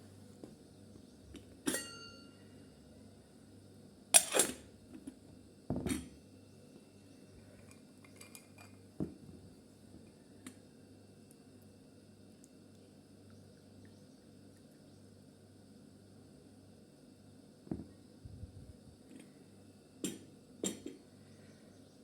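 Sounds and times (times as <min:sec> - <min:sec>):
kitchenware clinking and clattering: 0:01.7 - 0:02.2, 0:07.6 - 0:08.8, 0:20.0 - 0:21.0
small knock: 0:17.7 - 0:18.0.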